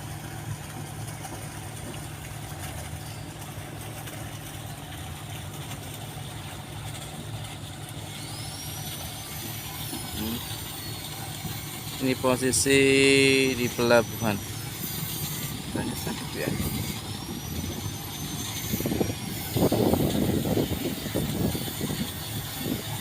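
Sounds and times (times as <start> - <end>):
diesel engine idling: 9.9 - 19.9.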